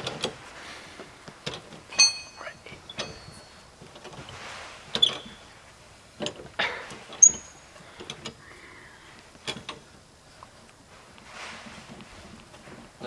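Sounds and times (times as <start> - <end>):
metal tools clicking and knocking: 1.4 - 3.6
car jack squeaks: 1.6 - 3.6, 4.9 - 5.5, 7.0 - 8.4.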